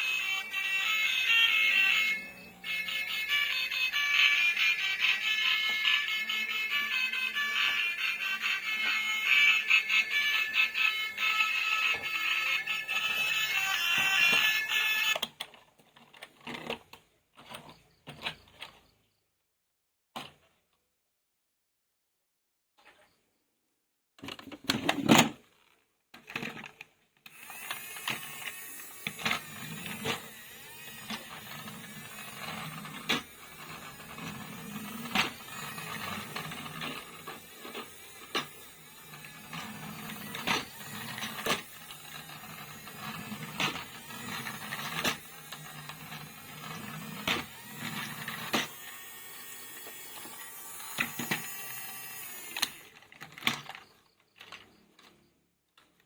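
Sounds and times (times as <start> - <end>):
small motor whirring: 0.0 - 15.2, 27.3 - 54.6.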